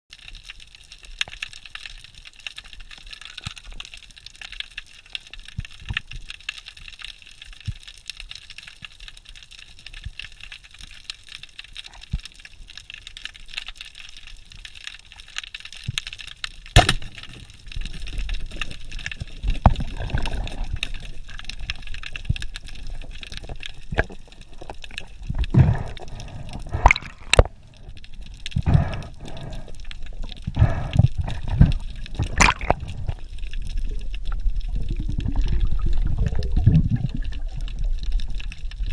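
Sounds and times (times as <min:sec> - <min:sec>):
water sloshing and splashing: 0:16.8 - 0:38.9.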